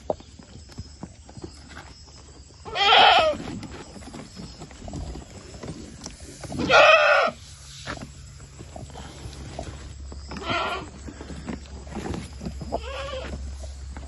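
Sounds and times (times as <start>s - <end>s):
goat bleating: 2.7s - 3.4s, 6.6s - 7.4s, 10.3s - 10.9s, 12.7s - 13.4s
faint knocks and shuffling: 3.2s - 14.0s.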